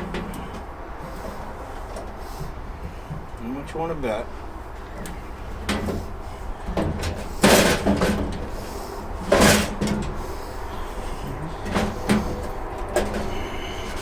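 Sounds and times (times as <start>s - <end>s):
steel tool chest clanking on metal: 5.0s - 8.6s, 9.3s - 10.2s, 11.6s - 14.0s.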